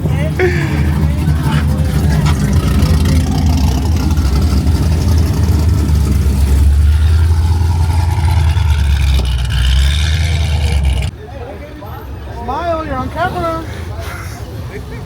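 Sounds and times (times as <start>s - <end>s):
car engine running: 0.0s - 11.1s.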